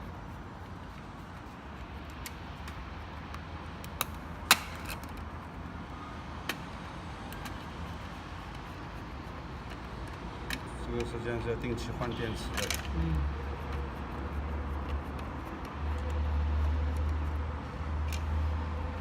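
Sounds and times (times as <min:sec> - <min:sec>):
plastic parts clicking: 0:12.5 - 0:13.0.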